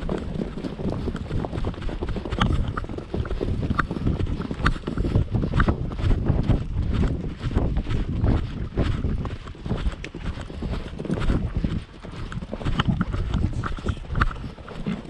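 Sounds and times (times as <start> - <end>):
hooves thudding on grass: 0.0 - 15.0.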